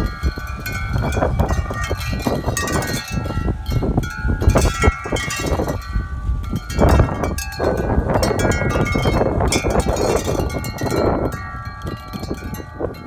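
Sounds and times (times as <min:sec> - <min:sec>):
metal wind chimes ringing: 0:00.0 - 0:13.0
wind rumble on microphone: 0:00.0 - 0:13.0.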